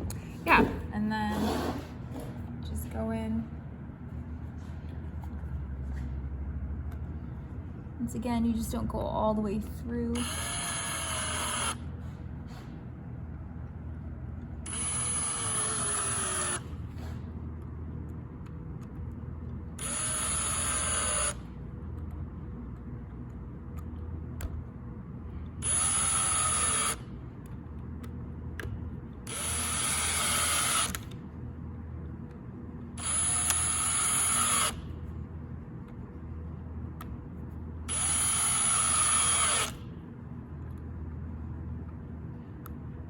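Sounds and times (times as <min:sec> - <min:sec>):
cordless drill driving screws: 0:10.2 - 0:11.8, 0:14.7 - 0:17.1, 0:19.8 - 0:21.4, 0:25.6 - 0:27.0, 0:29.3 - 0:31.1, 0:33.0 - 0:34.9, 0:37.9 - 0:39.8.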